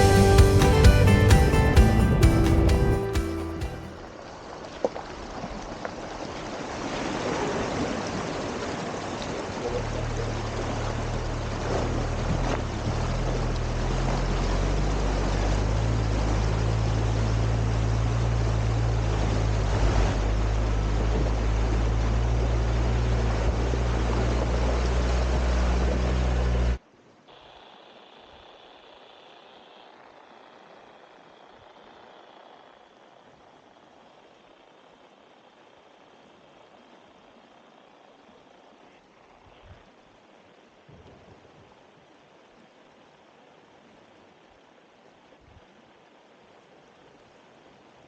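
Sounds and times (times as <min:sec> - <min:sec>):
vehicle engine drone: 0:00.0 - 0:04.0, 0:09.6 - 0:26.8
wind and road noise: 0:05.3 - 0:26.8.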